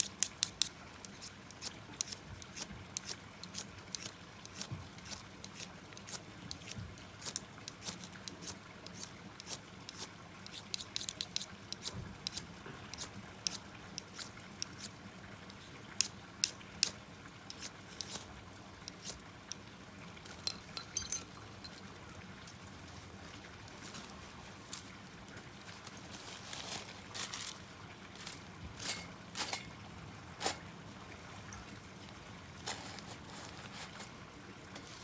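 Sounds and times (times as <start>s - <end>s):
faint steady hiss: 0.0s - 35.0s.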